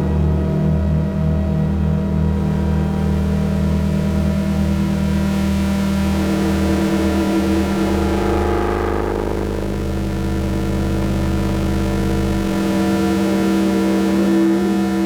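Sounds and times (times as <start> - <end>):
synthesizer low drone: 0.0 - 15.0
higher synthesizer tones: 5.5 - 11.1.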